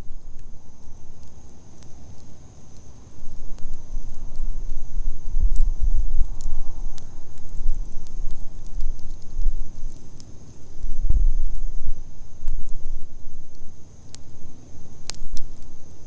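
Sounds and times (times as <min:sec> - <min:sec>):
campfire crackling and popping: 0:00.0 - 0:16.0.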